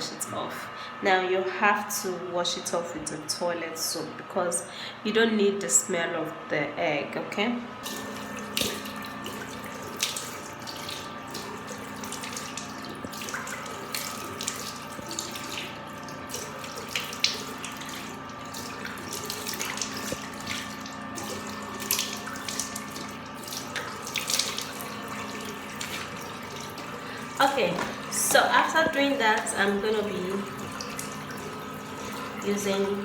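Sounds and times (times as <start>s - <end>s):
tap water running into sink: 7.8s - 33.0s
water splashes: 7.8s - 33.0s.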